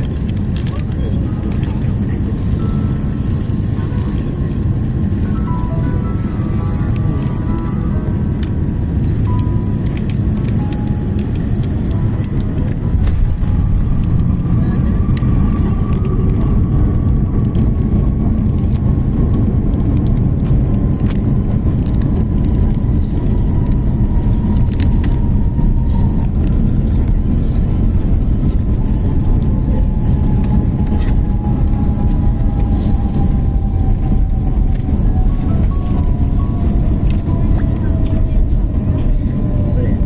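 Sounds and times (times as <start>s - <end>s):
aircraft cabin rumble: 0.0s - 40.0s
jet engine whine: 0.0s - 40.0s.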